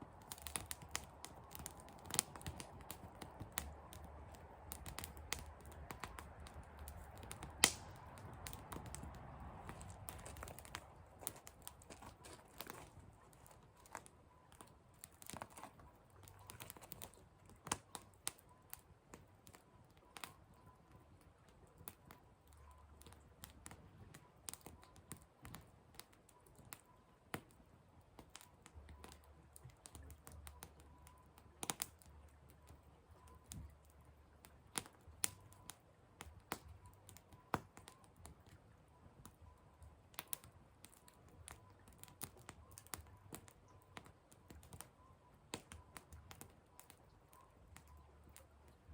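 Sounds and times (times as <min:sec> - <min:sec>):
wood fire crackling: 0:00.0 - 0:48.9.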